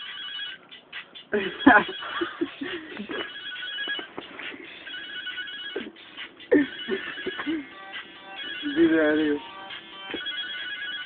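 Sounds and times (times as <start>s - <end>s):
telephone ringing: 0.0s - 0.8s, 3.1s - 4.2s, 4.8s - 6.0s, 8.2s - 9.4s, 10.0s - 11.0s.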